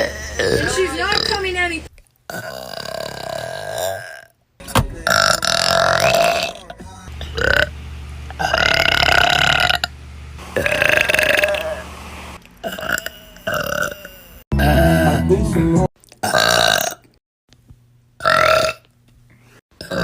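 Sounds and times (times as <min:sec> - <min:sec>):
loud drawn-out burps: 0:00.0 - 0:01.5, 0:02.3 - 0:04.4, 0:05.0 - 0:06.7, 0:07.3 - 0:07.7, 0:08.3 - 0:09.9, 0:10.6 - 0:11.8, 0:12.6 - 0:15.5, 0:16.2 - 0:17.2, 0:18.2 - 0:18.8, 0:19.8 - 0:20.0.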